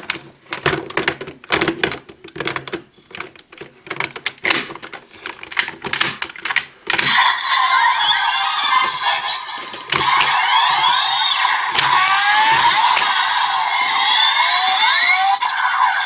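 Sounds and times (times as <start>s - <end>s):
plastic toy parts clicking: 0.0s - 7.1s, 9.8s - 10.3s, 11.7s - 13.1s
toy belt electronic sound effects: 7.0s - 16.0s.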